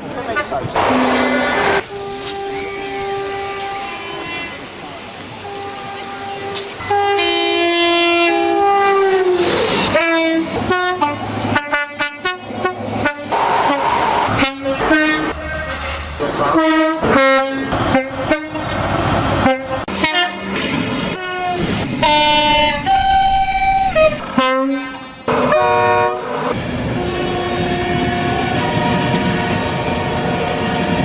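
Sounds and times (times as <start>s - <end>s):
train rumbling on rails: 0.0s - 31.0s
train horn blasts: 0.8s - 4.4s, 5.4s - 18.8s, 19.4s - 31.0s.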